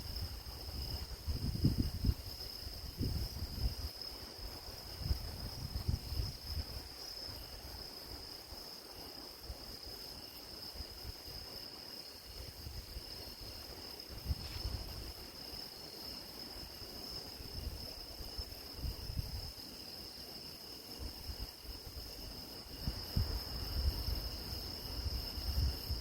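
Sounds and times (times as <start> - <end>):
wind rumble on microphone: 0.0 - 8.4, 12.2 - 15.4, 17.0 - 19.6, 20.9 - 26.0
crickets chirring: 0.0 - 26.0.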